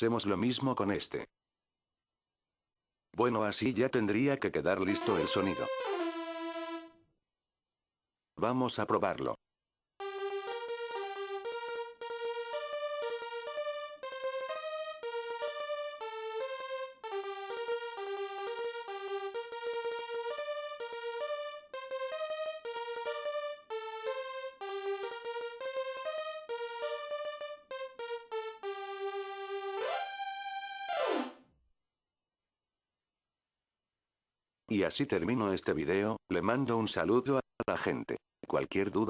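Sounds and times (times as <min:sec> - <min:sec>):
bright synth lead melody: 0:04.9 - 0:07.0, 0:10.0 - 0:31.4.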